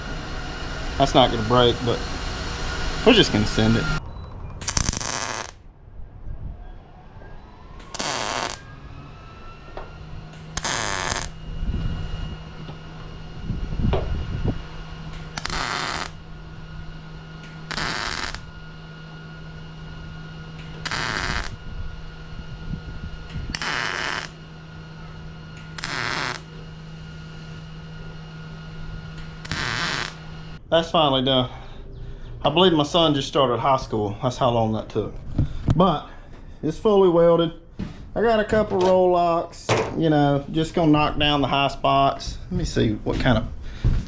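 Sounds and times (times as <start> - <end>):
crackling tack welds: 0.0 - 5.7, 7.7 - 30.6
low hum: 0.0 - 44.0.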